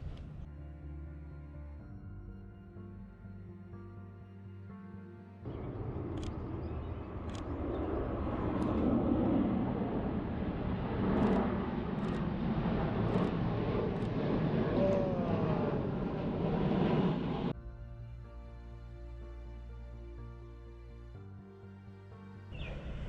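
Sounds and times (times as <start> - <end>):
distant engine rumble: 5.4 - 19.1.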